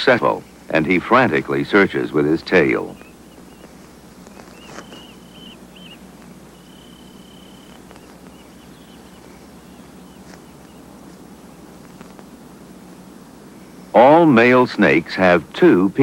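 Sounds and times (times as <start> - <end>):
soft steady hiss: 0.0 - 16.0
high-pitched animal calls: 1.5 - 10.9.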